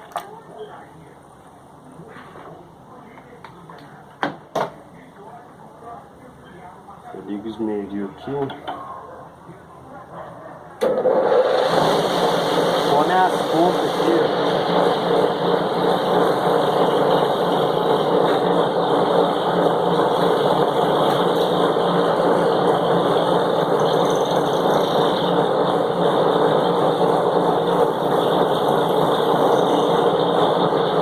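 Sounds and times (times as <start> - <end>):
bench grinder grinding brake pads: 10.8 - 31.0.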